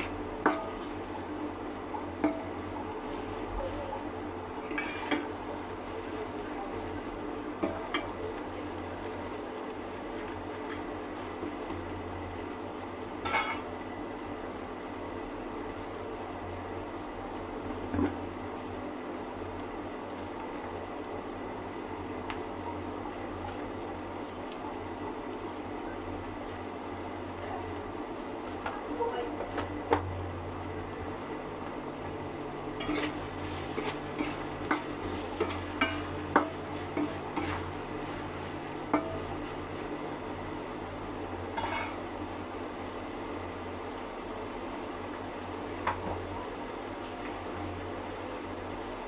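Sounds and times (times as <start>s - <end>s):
cooking hiss and hum: 0.0s - 49.0s
metal utensil clinking on pot: 13.2s - 13.7s, 32.8s - 37.7s, 38.9s - 39.3s, 41.5s - 42.0s.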